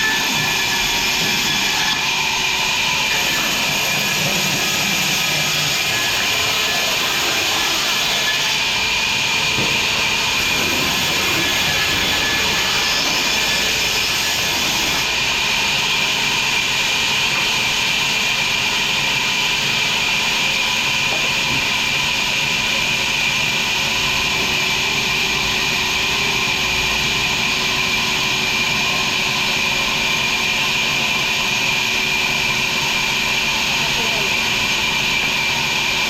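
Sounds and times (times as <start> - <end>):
sawmill machinery running: 0.0 - 36.0.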